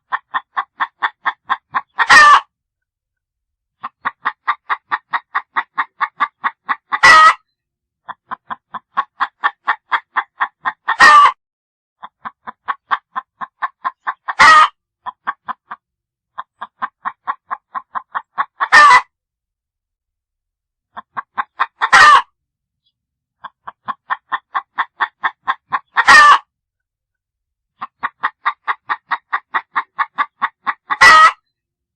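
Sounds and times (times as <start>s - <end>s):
hen cackling: 0.1s - 2.5s, 3.8s - 7.4s, 8.1s - 11.4s, 12.0s - 15.8s, 16.4s - 19.1s, 21.0s - 22.3s, 23.4s - 26.5s, 27.8s - 31.5s.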